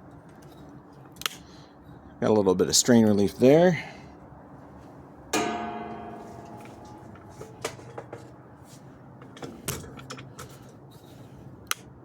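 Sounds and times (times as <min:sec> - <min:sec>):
ringing tone: 0:05.4 - 0:08.1.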